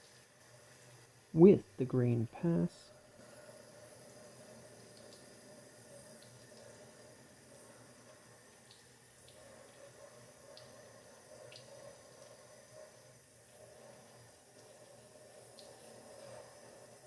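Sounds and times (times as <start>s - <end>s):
tap water running: 0.0s - 17.0s.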